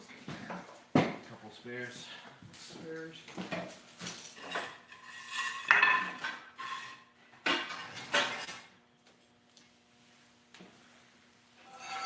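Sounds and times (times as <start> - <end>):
metal parts and tools clattering: 3.6 - 8.5.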